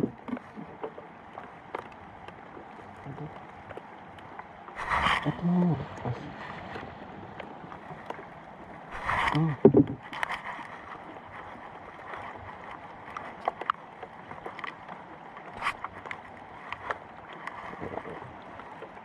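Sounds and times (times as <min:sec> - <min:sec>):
steady rain: 0:04.8 - 0:10.7.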